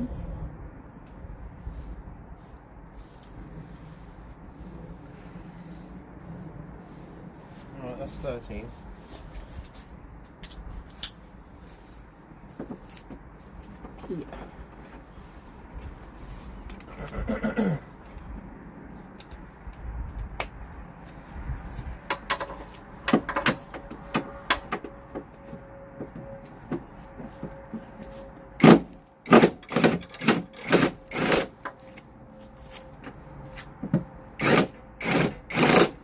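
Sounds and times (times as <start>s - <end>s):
socket spanner undoing nuts: 29.3s - 31.5s.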